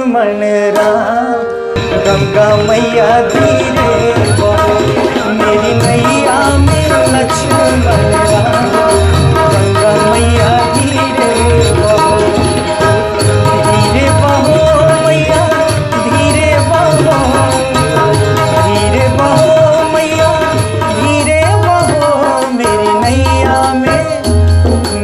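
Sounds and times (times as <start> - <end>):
tabla beat: 0.0 - 25.0
sustained instrumental melody: 0.6 - 25.0.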